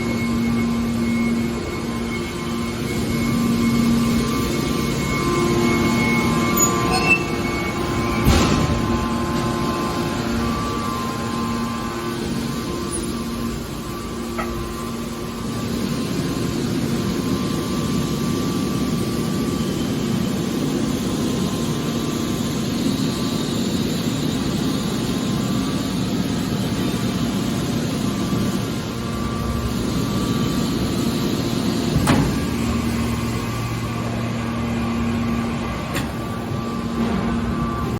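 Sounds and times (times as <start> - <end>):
machine hum: 0.0 - 37.9.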